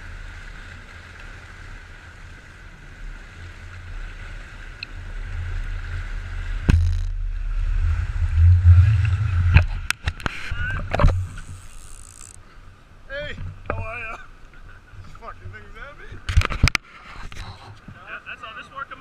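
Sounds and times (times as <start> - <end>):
boat engine rumble: 0.0 - 16.8
engine whine: 4.7 - 12.4
sharp knock: 6.7 - 7.3.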